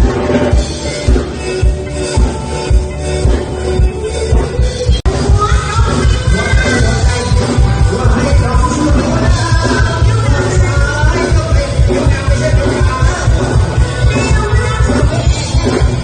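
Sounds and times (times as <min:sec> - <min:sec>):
person singing: 0:03.8 - 0:16.0.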